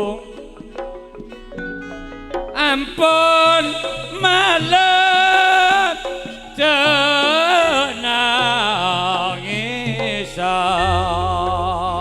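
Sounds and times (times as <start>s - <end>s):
wavering ornamented melody: 0.0s - 12.0s
low steady accompaniment: 7.4s - 12.0s.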